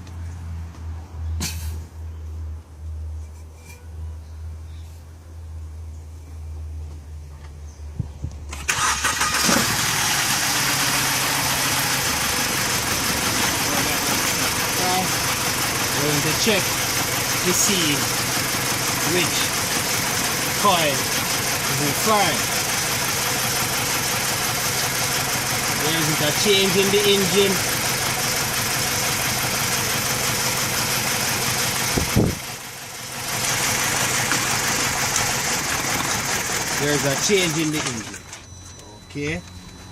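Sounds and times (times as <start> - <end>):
car engine starter cranking: 8.5 - 28.2, 33.3 - 38.8
car engine idling: 8.7 - 39.9.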